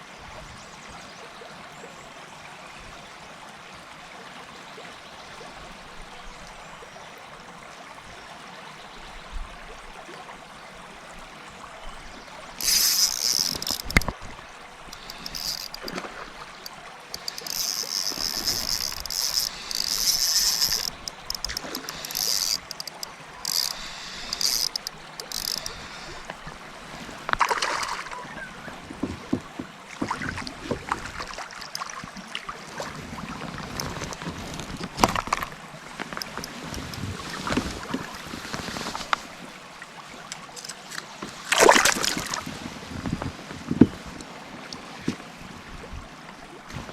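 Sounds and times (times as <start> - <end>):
flowing water rushing: 0.0 - 46.9
paddle splashes: 11.9 - 46.9.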